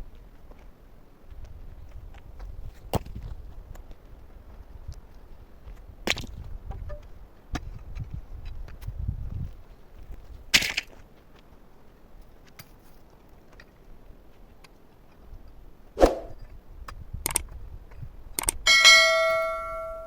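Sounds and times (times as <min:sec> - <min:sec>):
brief scrape: 0:16.0 - 0:16.4
wood and stone clicking: 0:16.9 - 0:17.6, 0:18.4 - 0:18.6.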